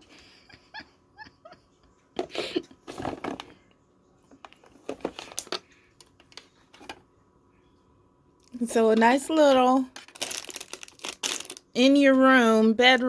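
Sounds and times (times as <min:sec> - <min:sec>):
objects being handled: 0:04.3 - 0:07.0.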